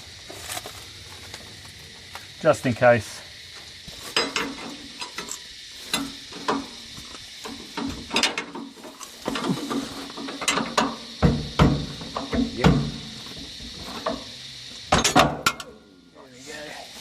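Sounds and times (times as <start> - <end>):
hand tools clinking on metal: 4.1 - 6.2.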